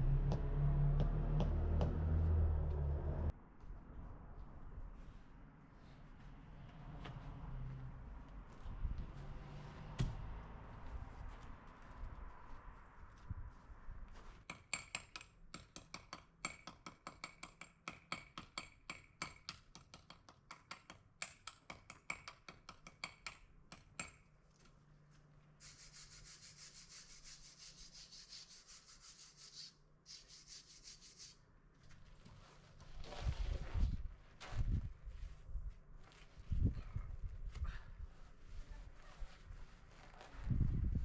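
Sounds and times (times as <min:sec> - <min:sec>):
rapid rubbing scraping strokes: 0:25.6 - 0:31.4.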